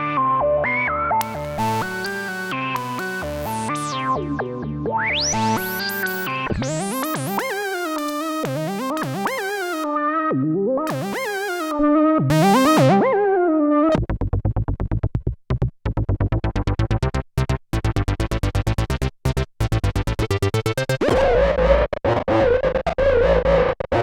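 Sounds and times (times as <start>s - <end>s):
synthesizer staccato sequence: 5.5s - 9.9s, 10.9s - 13.2s
synthesizer held note wobbling: 10.9s - 13.3s.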